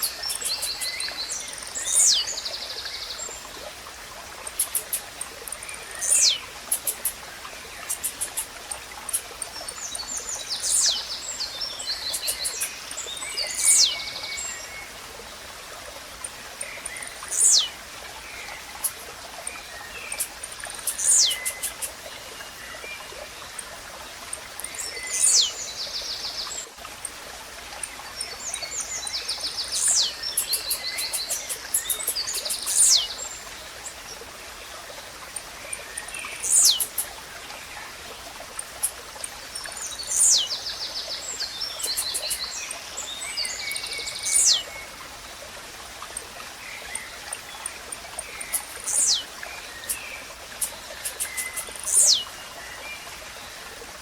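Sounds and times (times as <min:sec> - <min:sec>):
birds chirping: 0:00.0 - 0:03.1, 0:04.4 - 0:14.8, 0:16.2 - 0:22.2, 0:24.5 - 0:26.7, 0:27.9 - 0:33.5, 0:35.4 - 0:37.2, 0:38.5 - 0:44.7, 0:46.8 - 0:52.4
running water rushing: 0:00.0 - 0:54.0.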